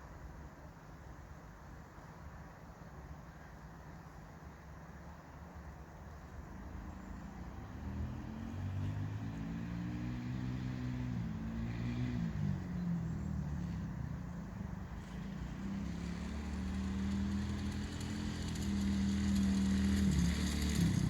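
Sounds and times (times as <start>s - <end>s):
small four-stroke engine running: 8.0s - 21.0s.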